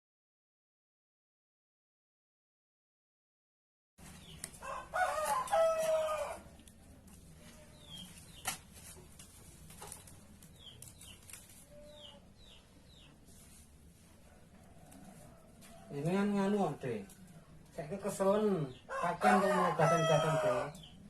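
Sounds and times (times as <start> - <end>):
small birds chirping: 4.0 - 21.0
rooster crowing: 4.6 - 6.5, 18.9 - 20.8.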